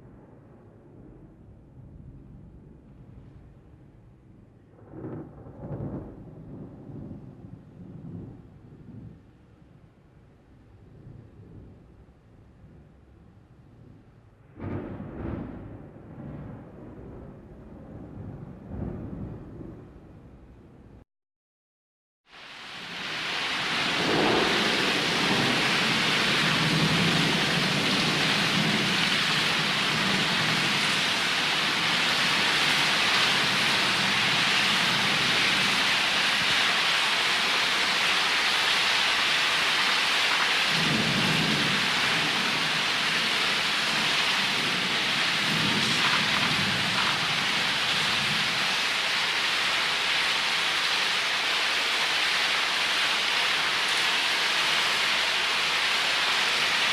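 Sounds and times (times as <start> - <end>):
low thunder rumbling: 0.0 - 10.0, 10.6 - 20.9, 23.7 - 36.5, 40.7 - 48.7
steady rain hiss: 22.3 - 56.9.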